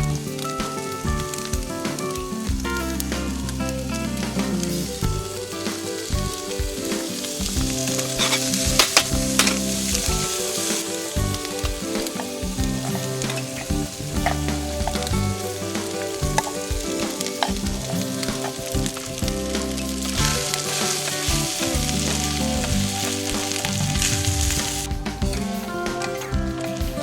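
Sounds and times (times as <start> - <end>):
food sizzling in a pan: 4.8 - 24.9
utensil scraping a pan: 8.0 - 15.1.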